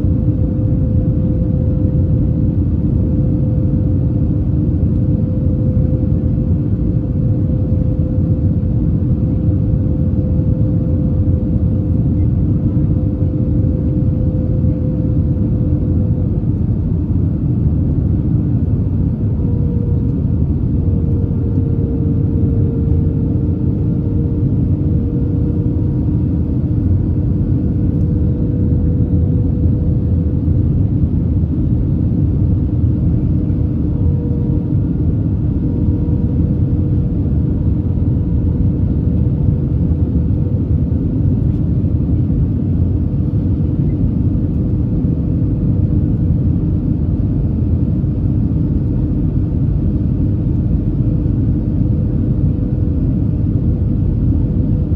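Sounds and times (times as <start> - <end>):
airplane airflow and engine rumble: 0.0 - 54.9.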